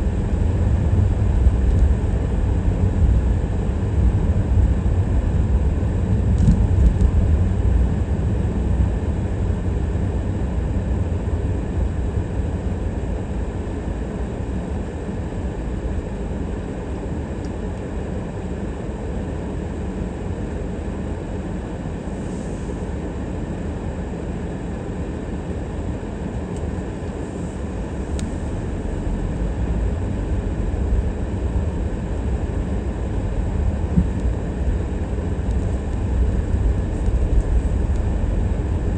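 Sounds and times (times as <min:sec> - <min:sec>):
car driving rumble: 0:00.0 - 0:17.7, 0:26.6 - 0:38.9.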